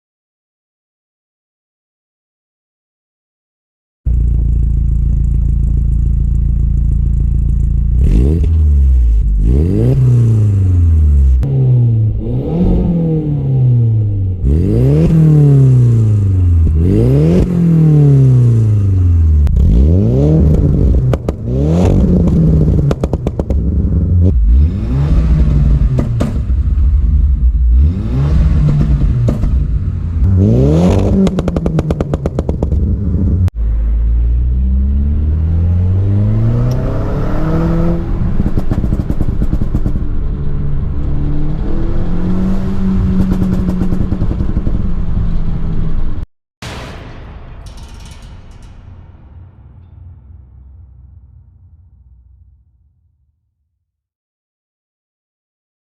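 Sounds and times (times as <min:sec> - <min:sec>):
car engine revving: 0:04.1 - 0:46.2
exhaust pops and bangs: 0:19.4 - 0:33.5, 0:38.2 - 0:40.2.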